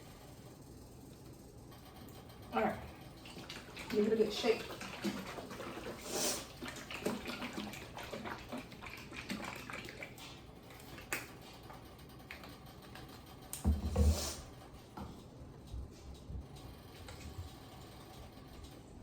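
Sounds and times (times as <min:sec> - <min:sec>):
liquid sloshing in container: 0:03.1 - 0:11.8.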